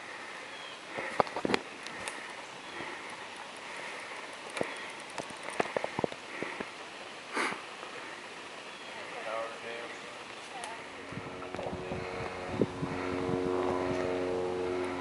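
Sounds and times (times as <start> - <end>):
twigs snapping: 1.1 - 2.4, 4.3 - 6.7
person sniffing: 7.3 - 7.6.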